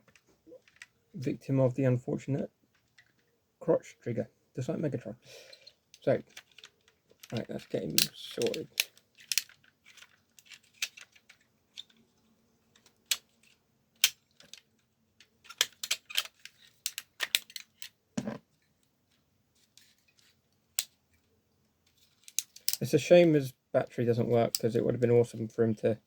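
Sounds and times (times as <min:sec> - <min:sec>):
plastic toy clicks and snaps: 0:08.0 - 0:09.6, 0:15.5 - 0:17.9.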